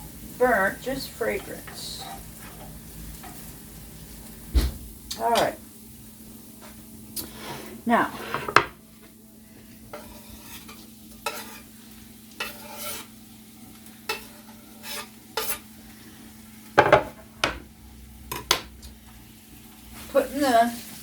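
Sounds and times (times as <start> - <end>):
onions frying faint sizzle: 0.0 - 21.0
utensil scraping in skillet: 0.4 - 3.6, 6.6 - 8.8, 9.5 - 17.3.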